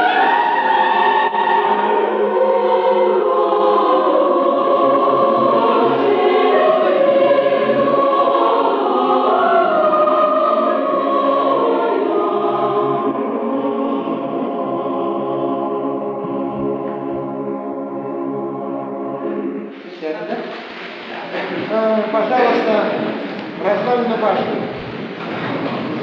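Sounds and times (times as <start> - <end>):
choir singing unaccompanied: 0.0 - 26.0.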